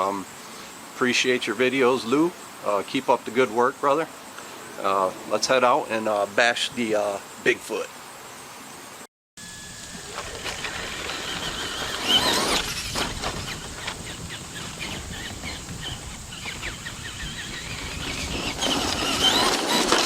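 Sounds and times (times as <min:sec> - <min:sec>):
electric motor whining: 0:09.4 - 0:20.0
tyres crunching on rough ground: 0:10.0 - 0:20.0.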